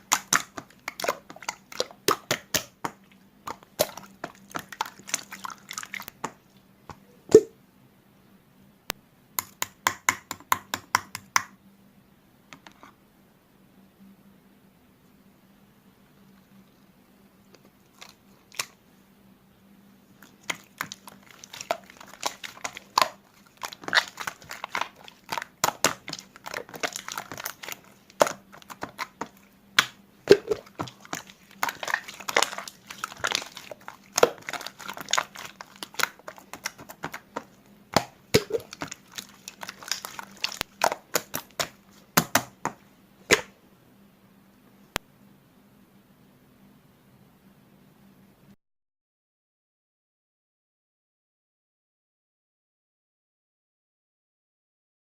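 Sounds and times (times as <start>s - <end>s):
slime crackling and popping: 0.0s - 6.4s, 20.2s - 43.5s
faint steady hum: 0.0s - 48.6s.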